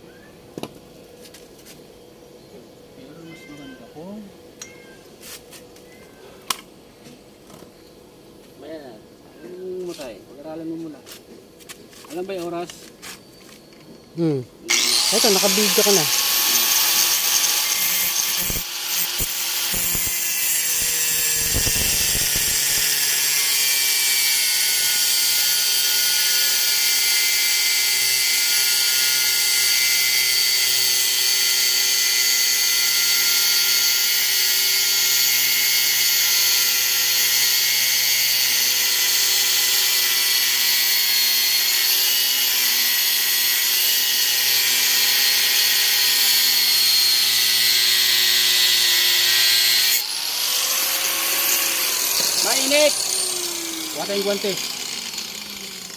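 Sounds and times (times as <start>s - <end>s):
power tool whining: 14.7s - 55.9s.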